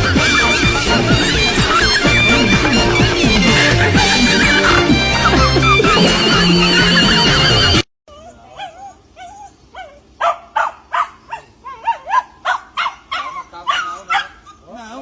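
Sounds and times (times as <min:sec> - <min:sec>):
dog whining and yelping: 0:00.0 - 0:06.3, 0:08.1 - 0:15.0
music: 0:00.0 - 0:07.8
dog barking: 0:09.8 - 0:14.9.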